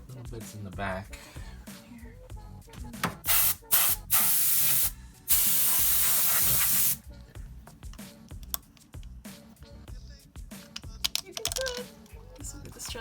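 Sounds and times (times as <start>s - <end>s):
compressed air hissing: 3.0s - 7.0s.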